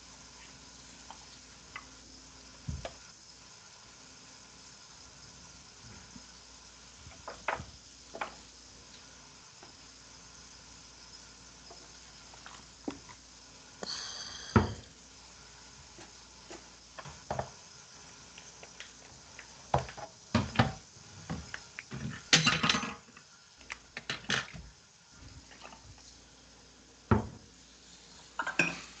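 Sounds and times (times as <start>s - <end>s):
dishes and pans clinking: 22.0s - 23.2s, 28.4s - 28.9s.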